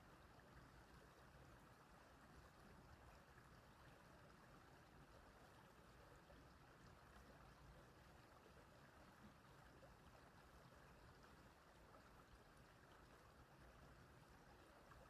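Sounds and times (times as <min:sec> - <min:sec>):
small stream flowing: 0:00.0 - 0:15.0.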